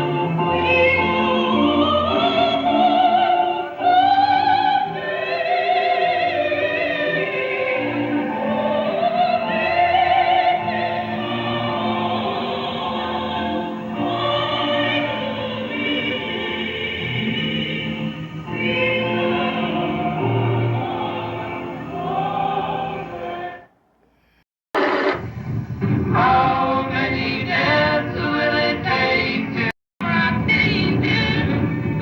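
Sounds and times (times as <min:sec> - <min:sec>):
person singing long wordless notes: 0:00.0 - 0:24.4.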